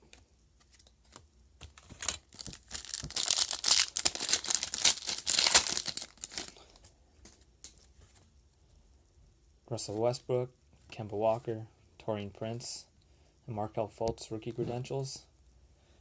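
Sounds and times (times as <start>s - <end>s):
card pack wrapper tearing: 1.8s - 6.8s.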